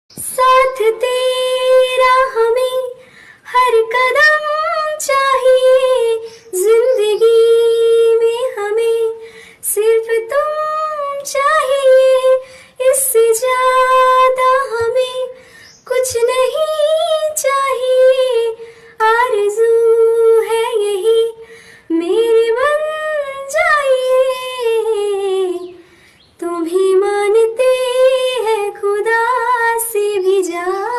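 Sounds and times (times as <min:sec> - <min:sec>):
woman singing unaccompanied: 0:00.1 - 0:30.9.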